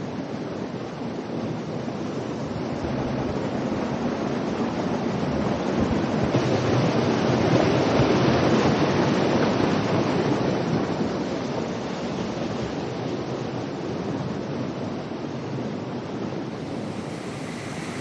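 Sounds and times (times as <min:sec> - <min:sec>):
water rushing over waterfall: 0:16.5 - 0:18.0.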